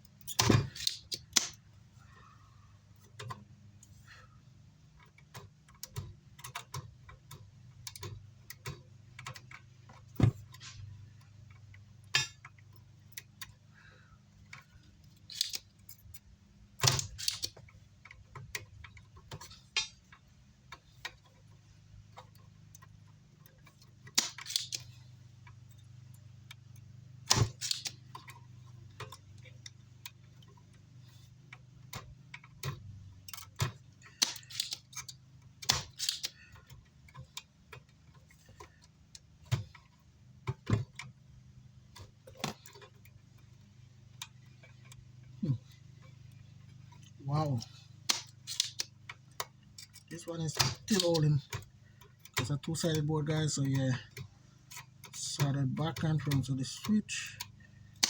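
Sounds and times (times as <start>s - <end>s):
hand tools clicking and tapping: 0.0s - 1.6s, 4.9s - 58.0s.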